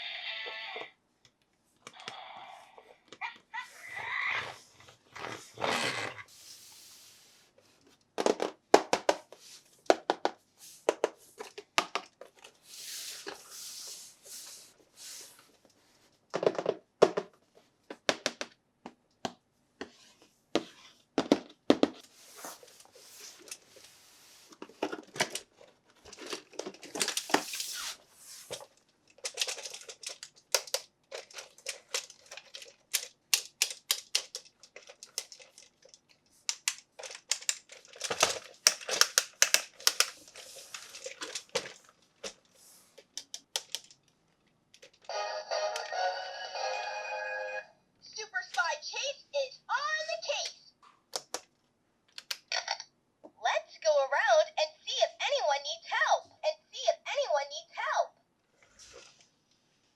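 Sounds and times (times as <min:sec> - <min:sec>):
packaging crinkling and tearing: 0:29.2 - 0:42.0.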